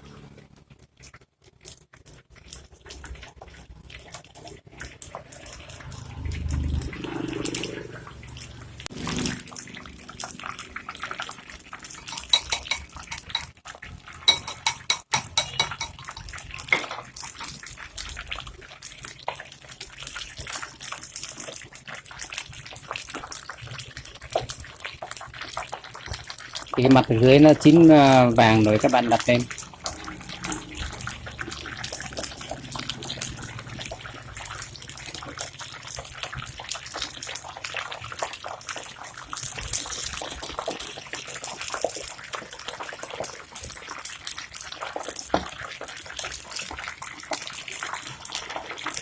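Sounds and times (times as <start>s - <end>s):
food sizzling in hot oil: 0.0s - 49.0s
utensil clinking against pan: 12.0s - 13.6s, 14.2s - 17.0s.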